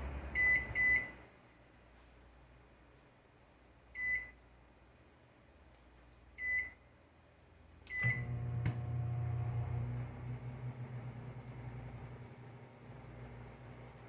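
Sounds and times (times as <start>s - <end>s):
microwave oven beeps: 0.4s - 1.2s, 4.0s - 4.4s, 6.4s - 6.8s, 7.9s - 12.1s
microwave click: 7.9s - 10.0s
microwave humming: 7.9s - 14.0s.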